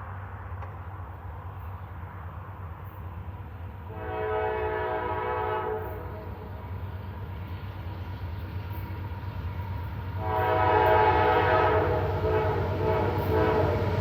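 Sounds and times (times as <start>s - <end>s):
freight train rumble: 0.0s - 14.0s
locomotive air horn blast: 3.9s - 6.6s, 10.2s - 14.0s.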